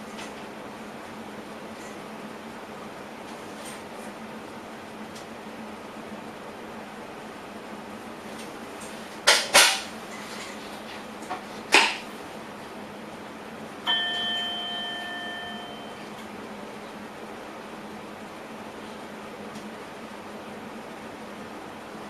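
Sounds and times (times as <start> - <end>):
train cab running hum: 0.0 - 22.0
chime ringing: 13.9 - 16.0.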